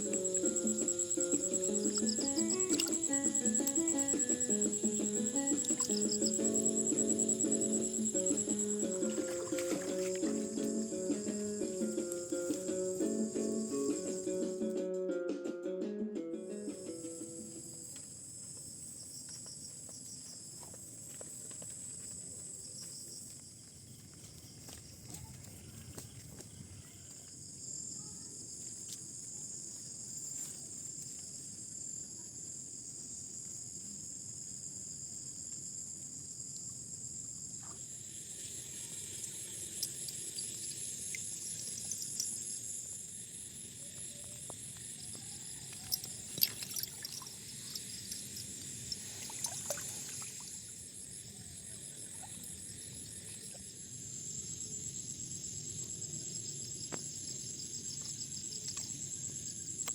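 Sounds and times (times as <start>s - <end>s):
crickets trilling: 0.0s - 15.1s, 16.5s - 59.9s
water trickling and splashing: 5.5s - 6.2s, 9.0s - 10.5s, 45.8s - 50.7s
sharp splashes: 49.0s - 50.6s.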